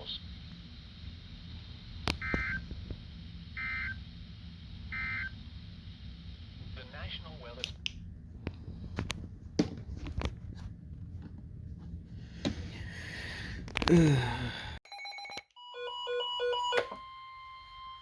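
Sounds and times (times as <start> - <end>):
room noise: 0.0 - 14.2.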